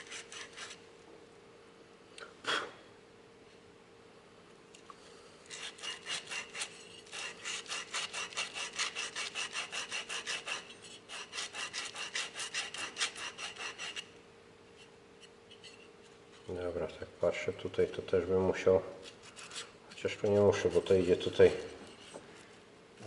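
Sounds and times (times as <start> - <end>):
sandpaper rasping on metal: 0.0 - 0.8, 5.5 - 14.1, 19.2 - 21.6.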